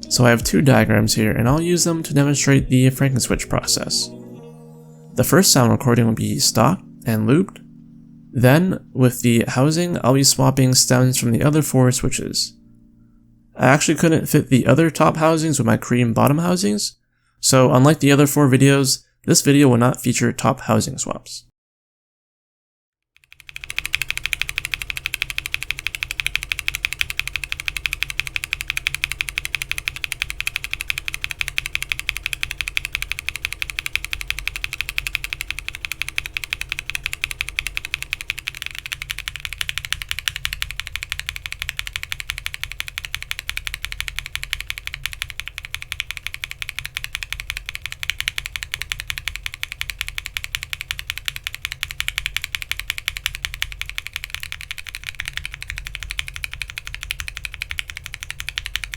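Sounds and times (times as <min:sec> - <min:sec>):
mechanical keyboard typing clatter: 0:23.2 - 0:58.9.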